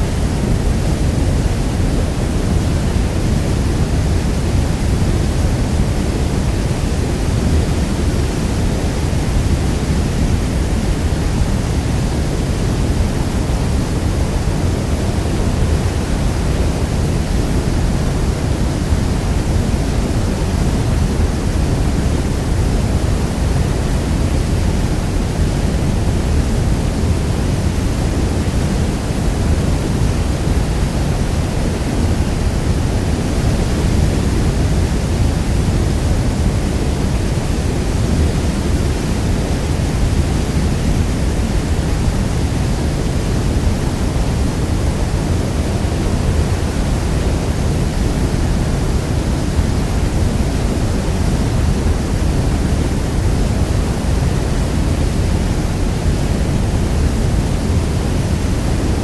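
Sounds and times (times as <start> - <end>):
waterfall roaring: 0.0 - 59.0.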